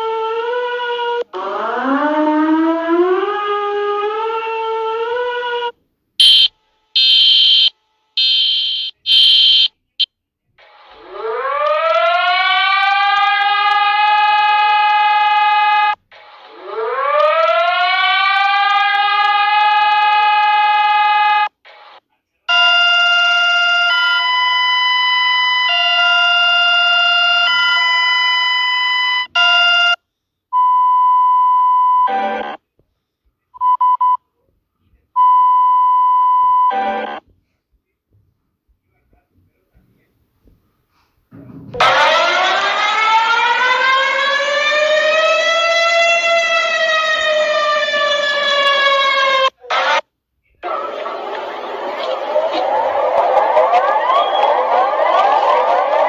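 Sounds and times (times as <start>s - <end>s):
siren winding up to a wail: 0.0s - 9.7s, 10.6s - 30.0s, 32.0s - 32.6s, 36.7s - 37.2s, 41.8s - 50.0s, 50.6s - 56.0s
multi-tone alert: 6.2s - 9.7s
short high beeps: 6.2s - 9.7s.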